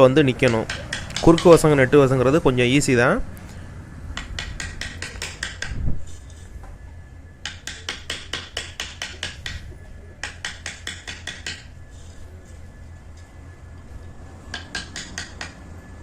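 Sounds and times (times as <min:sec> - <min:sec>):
chisel tapping into wood: 0:00.4 - 0:01.6, 0:04.2 - 0:05.8, 0:07.4 - 0:11.7, 0:14.5 - 0:15.6.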